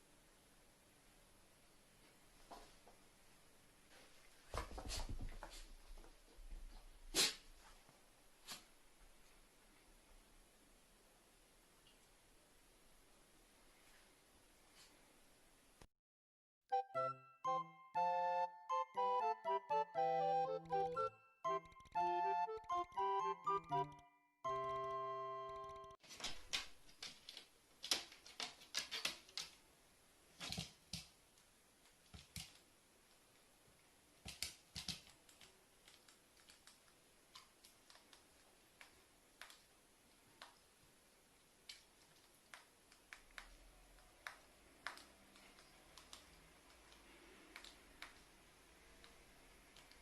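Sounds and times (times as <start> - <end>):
light clicks and taps: 34.3 - 40.7.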